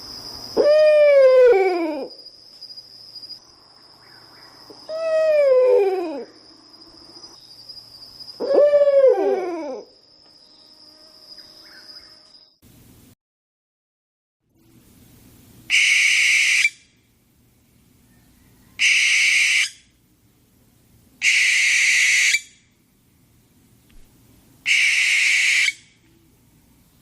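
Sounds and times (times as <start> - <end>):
owl screeching: 0.6 - 2.1, 4.9 - 6.4, 8.4 - 9.9, 15.7 - 16.8, 18.7 - 19.8, 21.2 - 22.6, 24.6 - 25.9.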